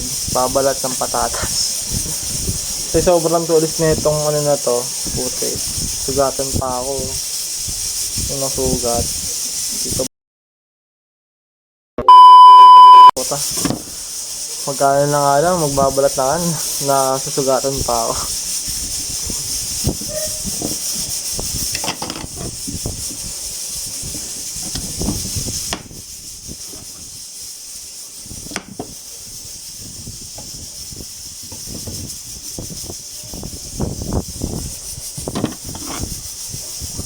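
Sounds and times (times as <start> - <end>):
pressure cooker hissing steam: 0.0 - 10.1, 13.2 - 37.0
kitchen clatter and knocks: 21.7 - 22.6, 35.3 - 36.1.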